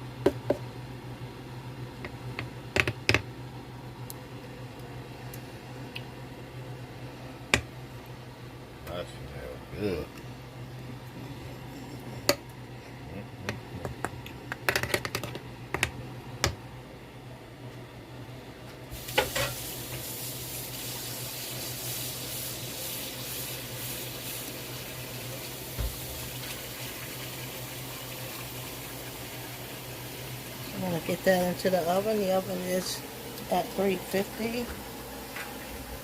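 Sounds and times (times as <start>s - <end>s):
kitchen tap running into sink: 19.0s - 30.6s.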